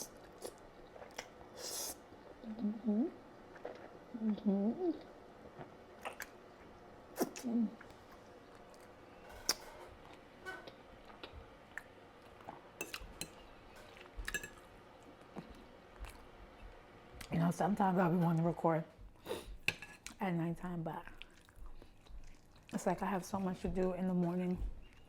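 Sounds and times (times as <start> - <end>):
person humming mm: 2.4 - 3.2, 4.1 - 5.1.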